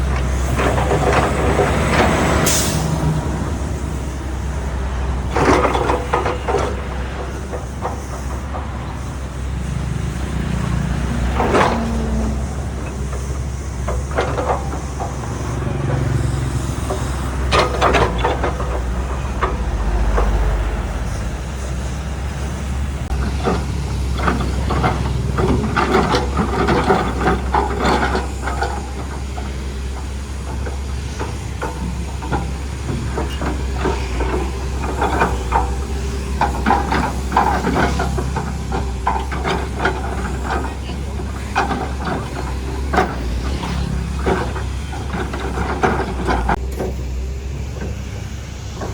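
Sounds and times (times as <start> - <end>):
heavy diesel machinery running: 0.0 - 48.9
metallic clanks and knocks: 5.3 - 9.1, 10.4 - 20.5, 23.1 - 47.0.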